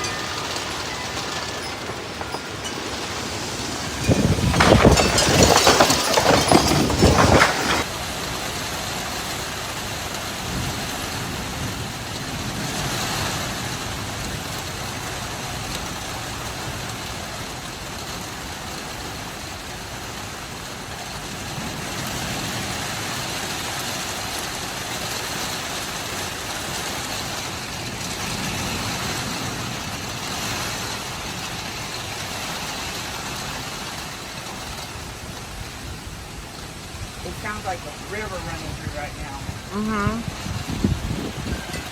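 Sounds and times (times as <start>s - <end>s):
wind rushing: 0.0s - 7.9s, 39.3s - 41.9s
heavy rain: 0.0s - 41.9s.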